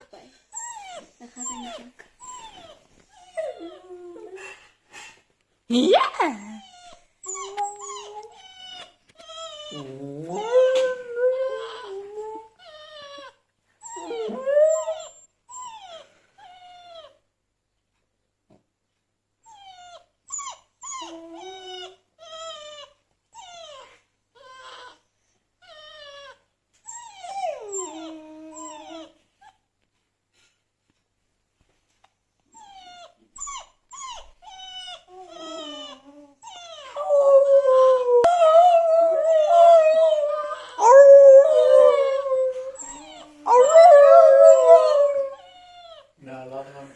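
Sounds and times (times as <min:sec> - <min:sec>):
dog whining and whimpering: 0:00.0 - 0:04.6, 0:06.1 - 0:17.2, 0:19.4 - 0:29.6, 0:32.5 - 0:46.2
recorded dog whining from phone: 0:00.5 - 0:04.5, 0:06.0 - 0:17.2, 0:19.4 - 0:29.6, 0:32.4 - 0:46.2
dog howling: 0:36.8 - 0:45.5.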